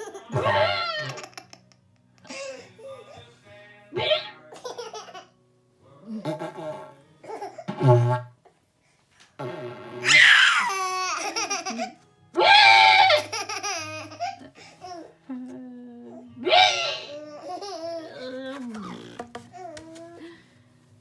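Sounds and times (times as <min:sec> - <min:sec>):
baby laughing: 0:00.0 - 0:02.6, 0:04.5 - 0:05.3, 0:06.3 - 0:07.7, 0:10.0 - 0:15.1, 0:16.4 - 0:20.2
quiet baby voice sounds: 0:14.4 - 0:16.4, 0:17.0 - 0:20.5.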